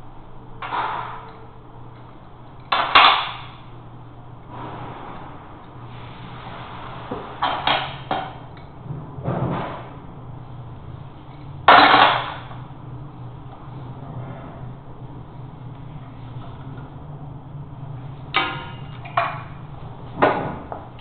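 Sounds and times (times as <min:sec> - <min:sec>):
harsh scrape or bang: 0:04.5 - 0:08.0.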